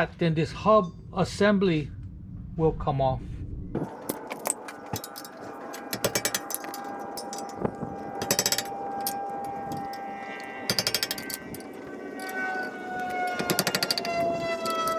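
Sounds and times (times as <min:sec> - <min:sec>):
impact wrench hammering: 0:04.1 - 0:14.9.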